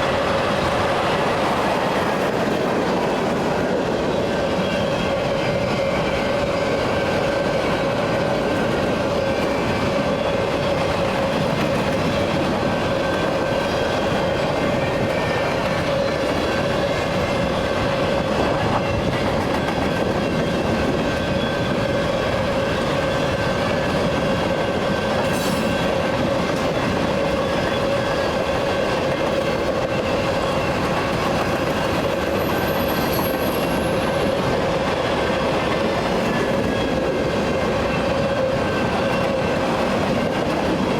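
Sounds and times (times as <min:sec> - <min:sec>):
train wheels rumbling on rails: 0:00.0 - 0:40.9
high wheel squeal: 0:31.5 - 0:34.4.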